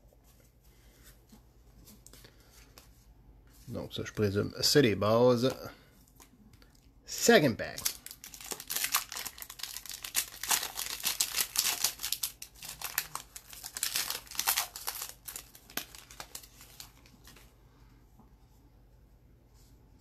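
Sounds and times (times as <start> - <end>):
wrapper tearing and crinkling: 7.7 - 17.4.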